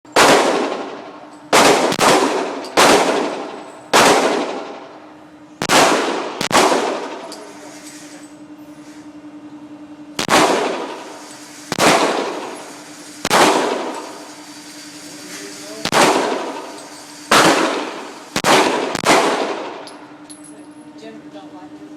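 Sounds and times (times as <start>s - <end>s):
low hum: 0.1s - 21.9s
pistol shots with echo: 0.2s - 4.9s, 5.6s - 7.3s, 10.2s - 14.3s, 15.8s - 20.0s.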